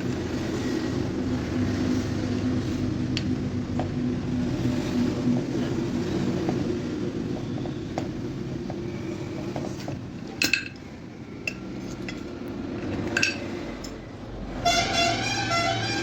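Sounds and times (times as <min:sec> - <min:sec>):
metal parts clinking: 0:10.4 - 0:10.8, 0:13.1 - 0:14.0.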